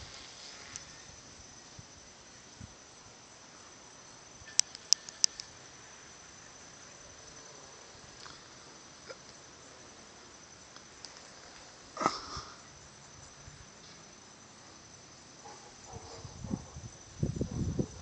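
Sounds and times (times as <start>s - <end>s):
high-pitched insect drone: 0.0s - 18.0s
sharp clicks: 4.5s - 5.5s.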